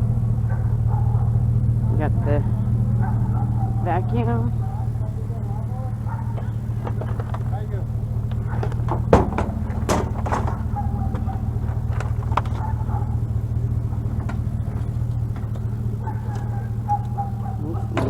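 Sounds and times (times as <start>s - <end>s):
vehicle engine idling: 0.0s - 18.0s
sharp knocks: 6.2s - 18.0s.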